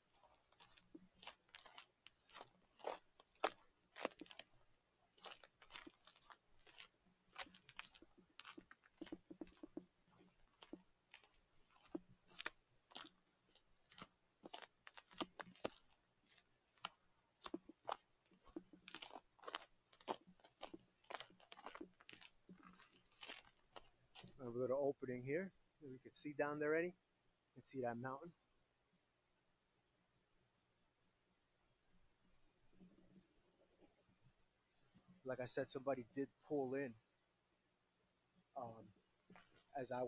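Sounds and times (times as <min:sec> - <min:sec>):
footsteps crunching on snow: 0:00.0 - 0:04.5, 0:05.2 - 0:16.0, 0:16.8 - 0:24.4.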